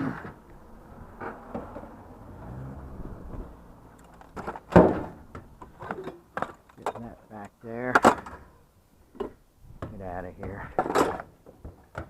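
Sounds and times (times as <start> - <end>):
hard objects being set down: 4.0 - 7.0
loud clunk: 4.4 - 6.5.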